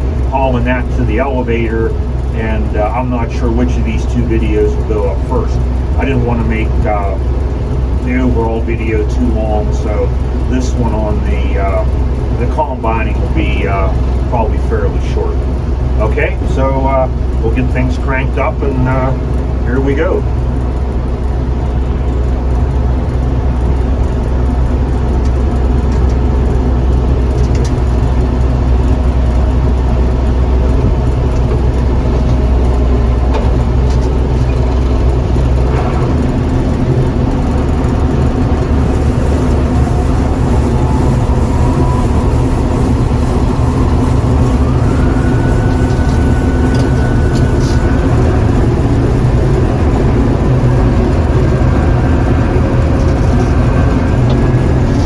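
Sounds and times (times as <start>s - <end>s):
combine harvester running: 0.0s - 55.0s
whine rising in pitch: 21.6s - 55.0s.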